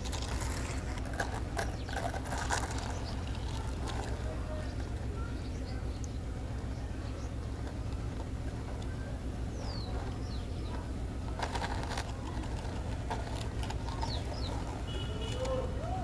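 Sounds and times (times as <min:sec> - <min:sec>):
clicks and rustling: 0:10.0 - 0:15.6.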